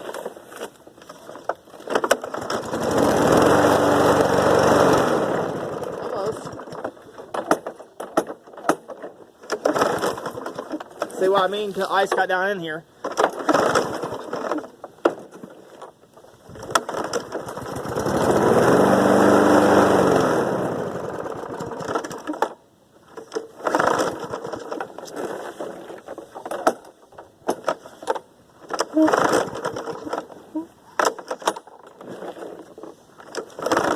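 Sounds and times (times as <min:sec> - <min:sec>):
lawn mower engine starting: 0:00.0 - 0:33.9
knocks and rattles: 0:05.8 - 0:19.6, 0:21.4 - 0:33.9.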